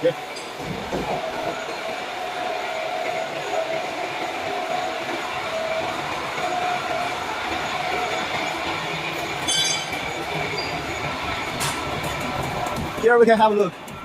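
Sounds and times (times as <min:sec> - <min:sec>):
short high squeal: 0:09.4 - 0:10.8.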